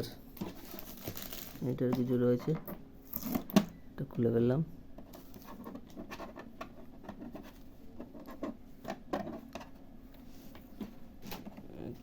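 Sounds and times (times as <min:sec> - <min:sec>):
packaging scraping and rubbing: 0:00.4 - 0:01.8.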